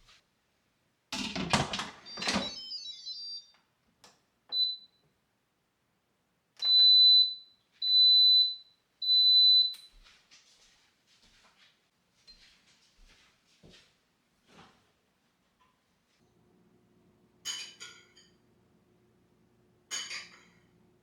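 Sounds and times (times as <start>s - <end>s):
appliance beeps: 1.9s - 3.6s, 4.5s - 5.0s, 6.6s - 9.9s.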